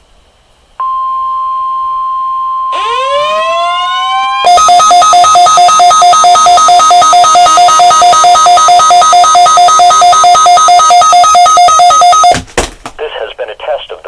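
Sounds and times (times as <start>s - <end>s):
pulsing emergency alert tone: 2.3s - 12.4s.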